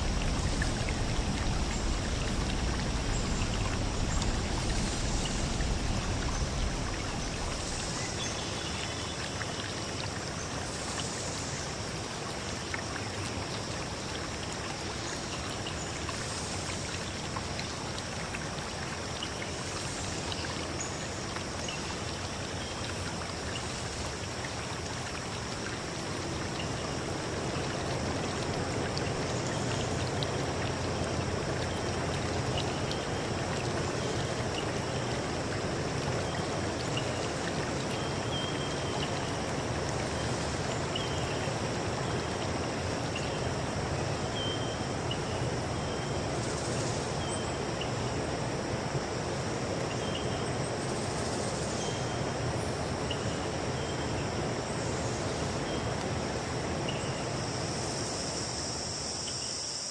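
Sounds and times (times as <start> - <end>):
stream running: 0.0 - 59.9
high insect drone: 19.1 - 59.9.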